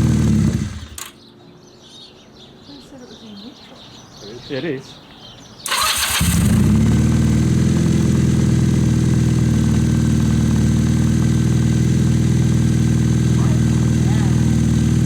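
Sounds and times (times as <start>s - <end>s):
motorcycle engine starting and idling: 0.0s - 1.2s, 5.6s - 15.0s.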